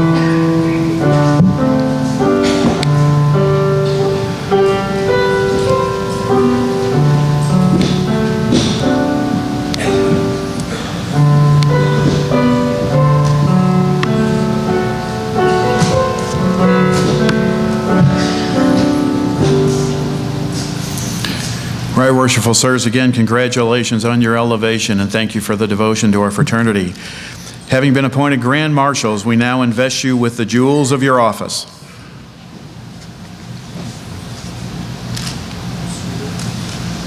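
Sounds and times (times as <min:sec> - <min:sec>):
slow keyboard music: 0:00.0 - 0:23.0.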